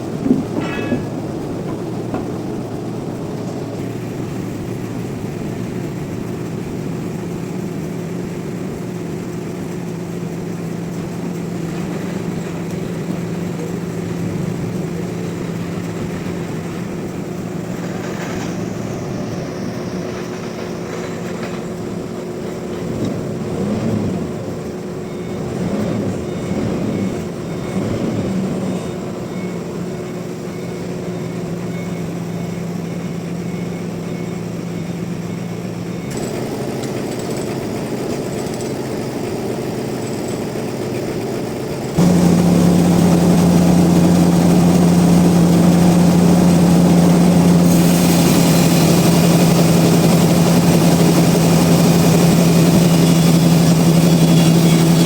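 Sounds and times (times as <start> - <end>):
sawmill machinery humming: 0.0 - 55.0
hiss: 42.0 - 55.0.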